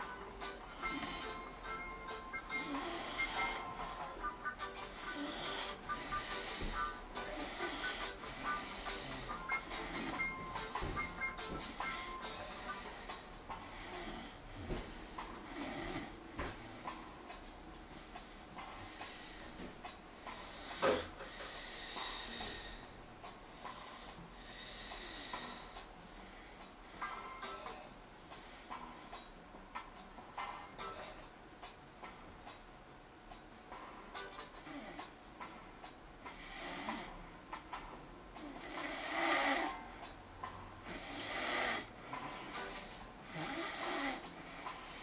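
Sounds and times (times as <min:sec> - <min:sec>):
faint background music: 0:00.0 - 0:45.0
man snoring: 0:00.7 - 0:01.5, 0:02.5 - 0:17.2, 0:20.3 - 0:22.9, 0:23.7 - 0:25.8, 0:36.3 - 0:37.2, 0:38.4 - 0:39.8, 0:40.8 - 0:45.0.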